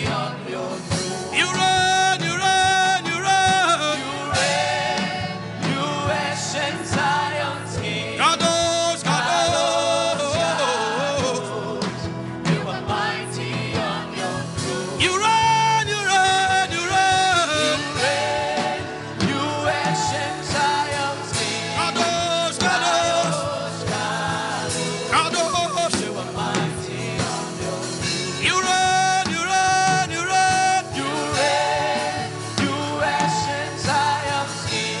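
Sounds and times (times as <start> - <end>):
worship singing with band: 0.0 - 35.0.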